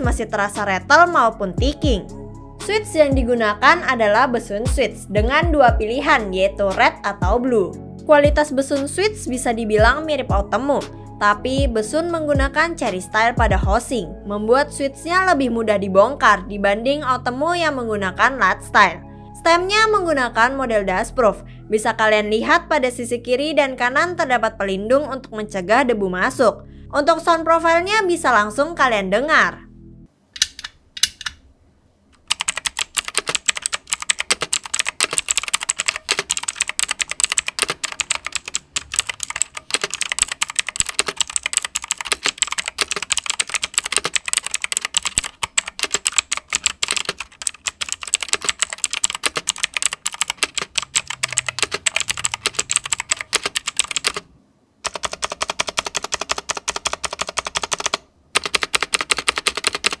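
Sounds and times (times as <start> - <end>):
mechanical keyboard key clacks: 30.4 - 31.4, 32.3 - 54.2.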